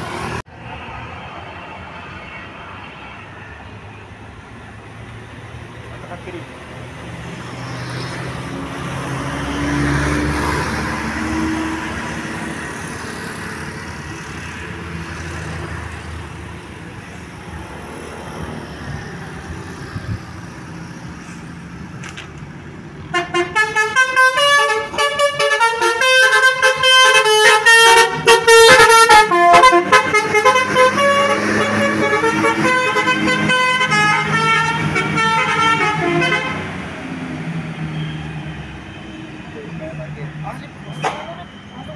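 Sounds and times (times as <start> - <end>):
traffic noise: 0.0 - 41.9
vehicle engine: 0.0 - 41.9
multi-tone bus horn melody: 23.1 - 36.8.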